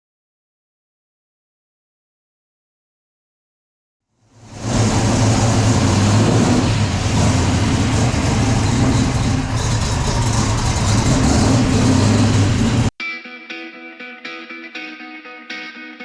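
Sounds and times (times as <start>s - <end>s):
car engine rumbling: 4.3s - 12.9s.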